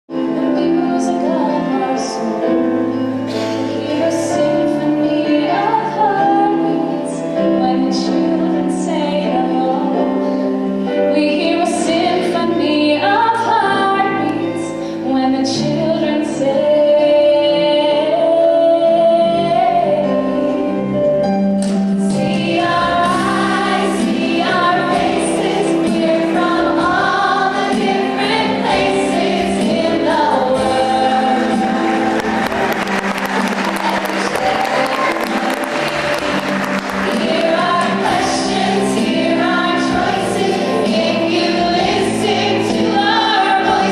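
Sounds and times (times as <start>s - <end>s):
instrumental accompaniment: 0.1s - 43.9s
woman singing: 0.2s - 2.7s, 3.6s - 10.4s, 11.0s - 20.7s, 22.0s - 32.3s, 33.6s - 35.9s, 37.1s - 43.9s
vocal ensemble singing: 0.2s - 10.5s, 22.0s - 43.9s.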